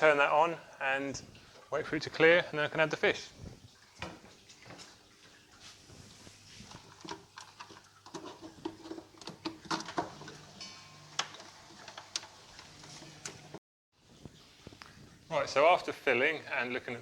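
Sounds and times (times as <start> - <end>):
water clicking and pattering: 0.8 - 17.0
low steady pump hum: 10.0 - 15.3.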